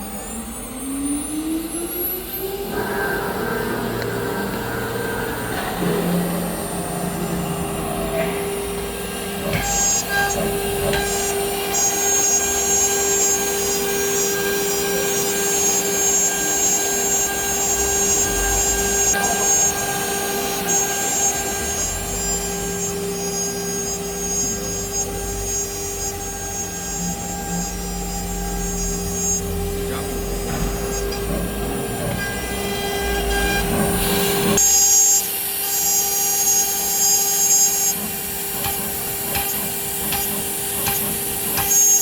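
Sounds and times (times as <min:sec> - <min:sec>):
router spindle whine: 0:00.0 - 0:42.0.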